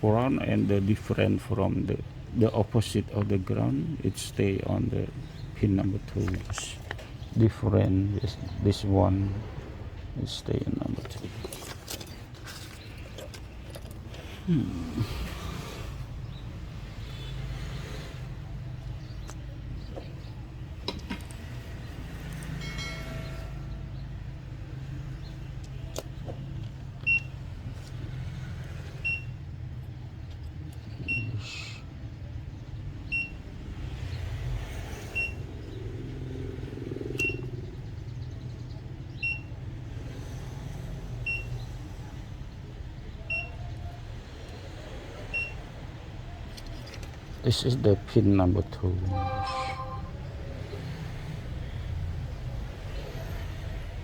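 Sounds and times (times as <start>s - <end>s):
high electronic beep: 49.1s - 50.2s.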